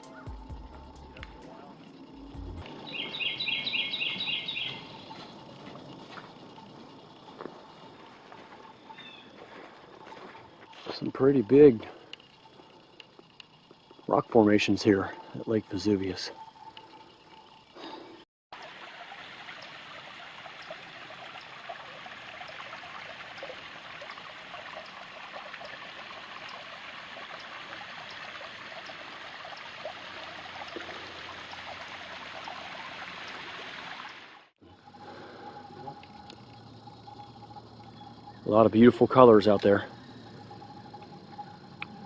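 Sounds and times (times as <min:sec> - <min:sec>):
stream over rocks: 0:18.6 - 0:34.5.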